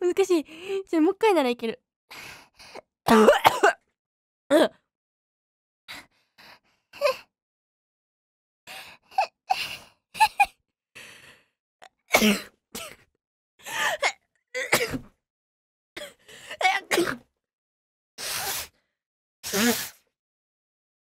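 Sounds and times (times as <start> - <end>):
woman sneezing: 19.5 - 20.0.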